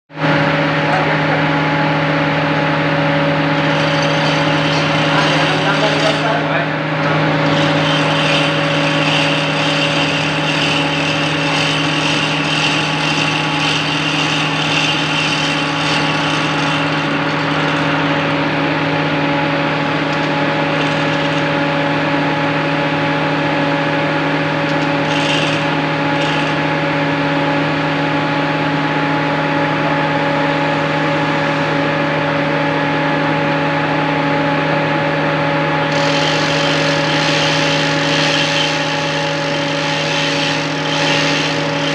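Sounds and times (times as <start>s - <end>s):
motor humming: 2.5s - 28.0s, 35.7s - 41.9s
high hissing whine: 3.0s - 23.3s, 35.8s - 41.9s.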